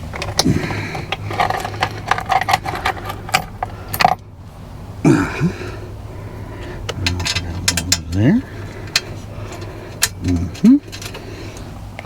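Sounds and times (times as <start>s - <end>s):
small metal parts clinking: 0.0s - 4.2s, 6.9s - 11.7s.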